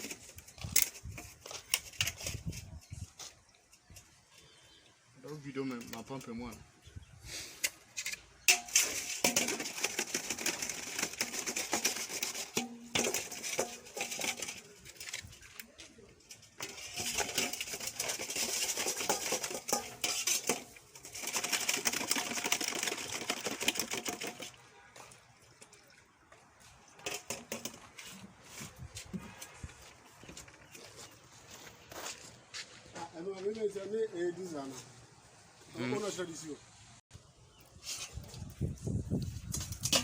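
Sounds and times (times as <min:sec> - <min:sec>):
metal objects clinking and rattling: 0:00.0 - 0:04.2, 0:07.6 - 0:24.7, 0:26.9 - 0:27.9, 0:39.3 - 0:40.0.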